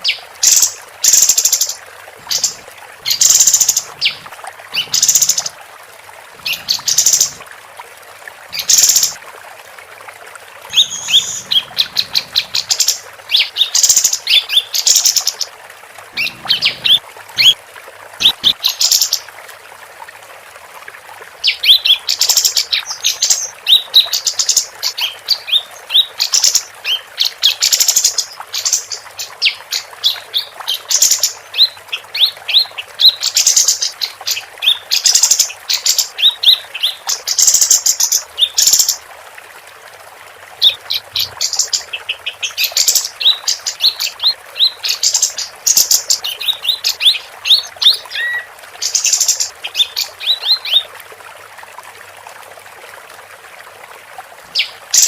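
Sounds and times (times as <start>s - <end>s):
songbird chirping and trilling: 10.7s - 15.4s, 16.2s - 17.6s, 40.6s - 50.8s.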